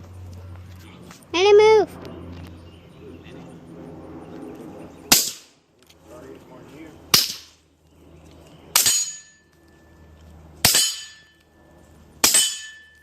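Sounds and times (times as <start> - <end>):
faint ringing tone: 11.1 - 13.0.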